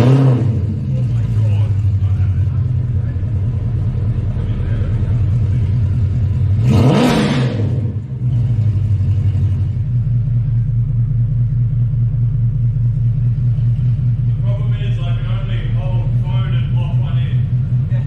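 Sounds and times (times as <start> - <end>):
car engine idling and revving: 0.0 - 18.0.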